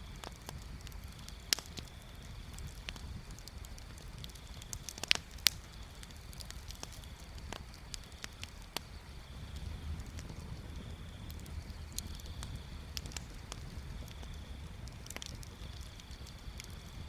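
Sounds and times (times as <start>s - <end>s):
bonfire crackling and popping: 0.0s - 17.0s
fire rumble: 0.0s - 17.0s.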